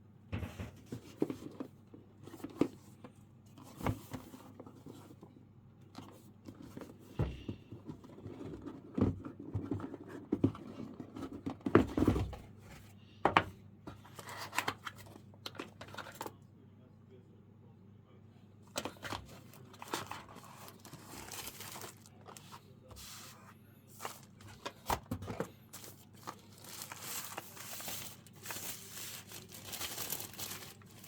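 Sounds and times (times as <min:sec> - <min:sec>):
packaging crinkling and tearing: 0:19.0 - 0:22.5, 0:25.7 - 0:31.0.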